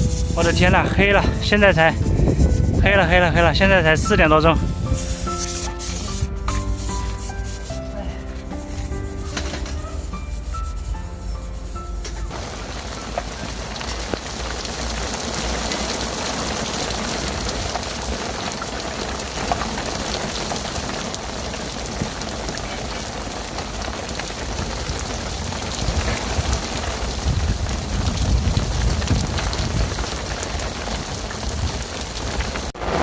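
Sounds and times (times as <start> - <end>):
wind buffeting microphone: 0.0 - 5.2, 24.1 - 33.0
heavy rain pouring: 0.0 - 33.0.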